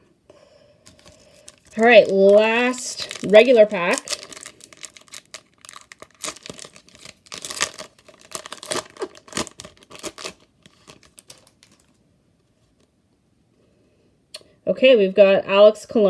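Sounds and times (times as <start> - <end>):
foil wrapper tearing and crinkling: 0.9 - 12.0.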